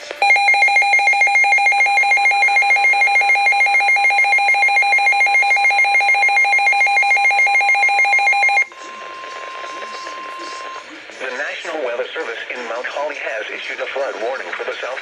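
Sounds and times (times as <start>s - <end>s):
electronic alarm pulsing: 0.2s - 11.0s.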